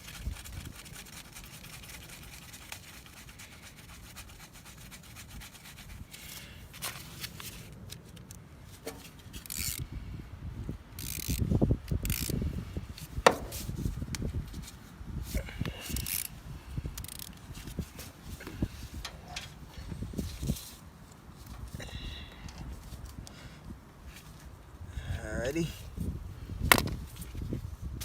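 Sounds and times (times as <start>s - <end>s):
handling bumps: 8.7s - 9.2s, 13.0s - 14.2s, 17.0s - 20.6s, 26.6s - 27.2s
tools rubbing and scraping: 13.0s - 13.9s, 14.6s - 16.4s, 17.0s - 20.8s.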